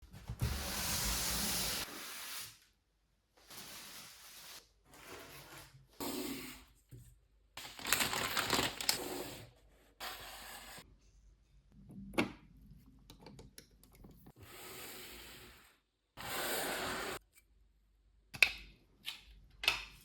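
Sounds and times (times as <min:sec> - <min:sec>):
packaging rustling and clicking: 0:07.6 - 0:09.0.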